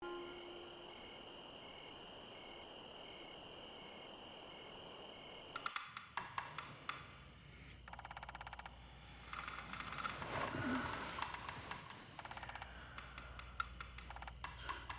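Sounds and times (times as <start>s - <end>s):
faint hiss: 0.0s - 7.9s
crickets chirping: 0.0s - 14.9s.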